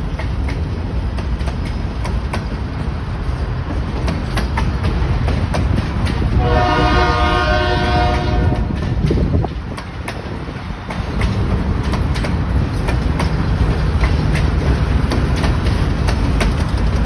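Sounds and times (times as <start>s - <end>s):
diesel locomotive rumble: 0.0s - 17.0s
wheels clicking over rail joints: 0.0s - 17.0s
locomotive air horn: 6.4s - 8.8s.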